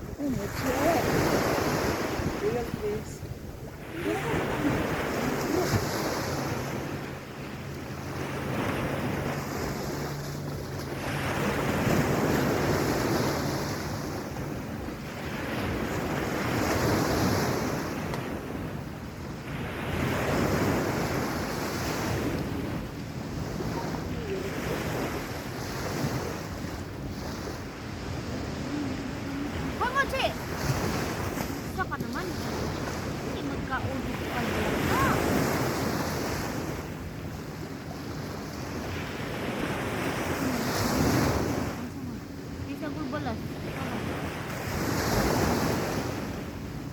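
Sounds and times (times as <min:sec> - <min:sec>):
surf washing onto beach: 0:00.0 - 0:46.9
wind buffeting microphone: 0:00.0 - 0:46.9.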